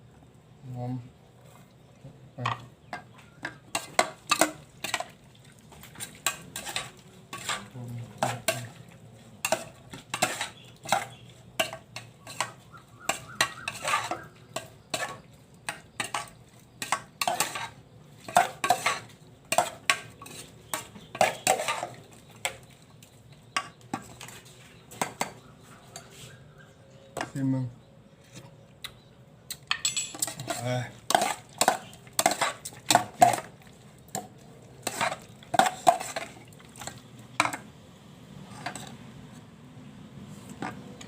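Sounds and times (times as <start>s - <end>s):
spoon scraping a mixing bowl: 3.4s - 5.1s, 5.9s - 8.8s, 9.4s - 22.8s, 23.4s - 26.4s, 30.0s - 33.5s, 34.1s - 37.6s, 38.5s - 39.4s.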